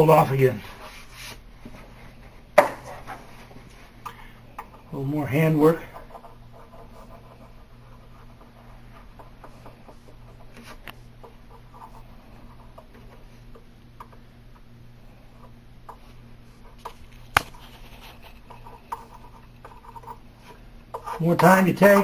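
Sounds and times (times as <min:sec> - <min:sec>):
steady low hum: 0:00.0 - 0:22.0
light scratching and rubbing: 0:15.3 - 0:22.0.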